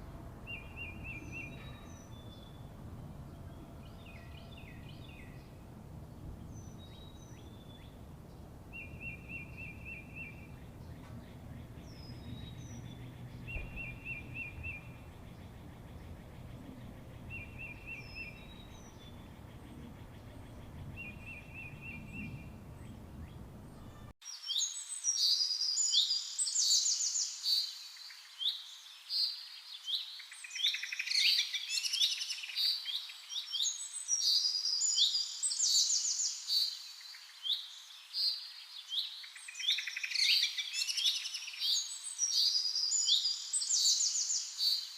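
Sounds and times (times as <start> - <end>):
high bird trill: 0.0 - 24.1
many birds chirping: 0.0 - 24.1
low background rumble: 0.0 - 24.2.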